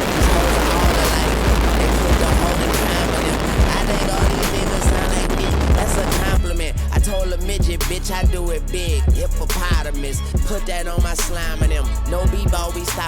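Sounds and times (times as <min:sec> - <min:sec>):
loud noisy rush: 0:00.0 - 0:06.6
rapping over a bass beat: 0:00.0 - 0:13.0.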